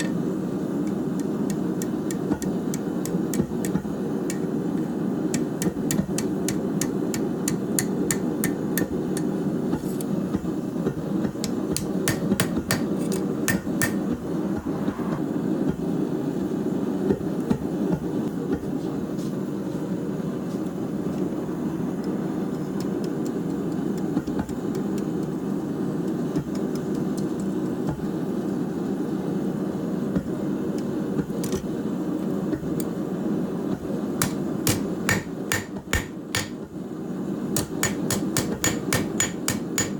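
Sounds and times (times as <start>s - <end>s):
hammer striking steel on anvil: 5.4s - 9.3s, 11.4s - 14.2s, 34.2s - 36.6s, 37.6s - 39.9s
low rushing noise: 13.2s - 17.0s.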